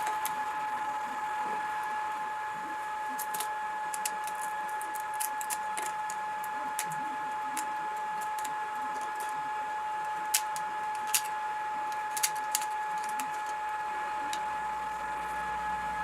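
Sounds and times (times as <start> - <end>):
small machine high-pitched whine: 0.0 - 16.0.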